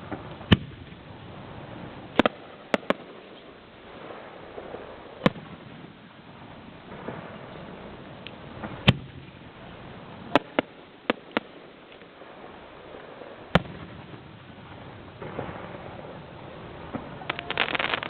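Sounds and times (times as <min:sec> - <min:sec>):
faint firework pops: 0:00.0 - 0:01.0, 0:02.1 - 0:05.7, 0:06.9 - 0:09.4, 0:10.3 - 0:14.3, 0:16.9 - 0:18.0
fireworks bangs: 0:00.0 - 0:18.0.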